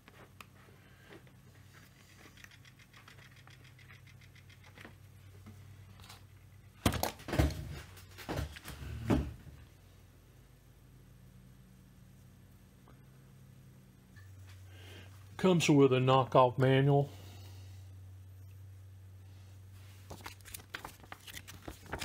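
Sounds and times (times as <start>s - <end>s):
small clicks: 2.0s - 5.0s.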